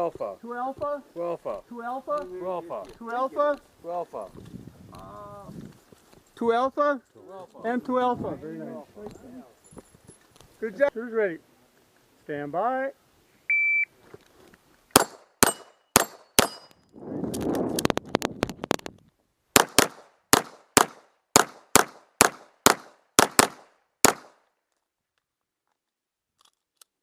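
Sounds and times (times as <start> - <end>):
shot timer beep: 13.5 - 13.9
pistol shots: 14.9 - 16.7, 19.6 - 24.4.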